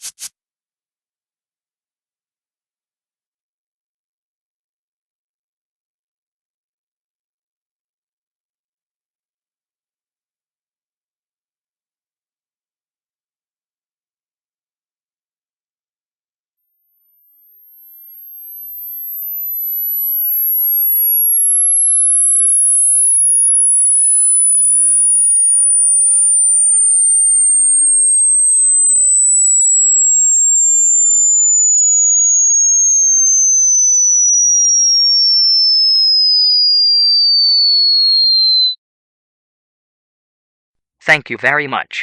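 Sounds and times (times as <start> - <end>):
pure electronic tone falling: 16.6 - 38.8.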